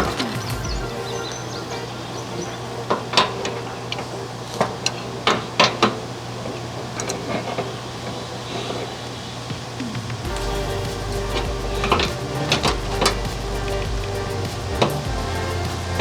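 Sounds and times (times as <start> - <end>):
steady low hum: 10.2 - 16.0.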